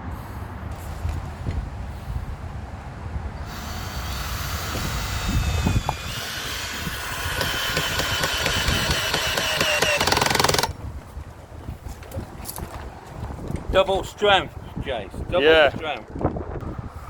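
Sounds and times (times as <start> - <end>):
power tool whining: 3.4 - 10.8.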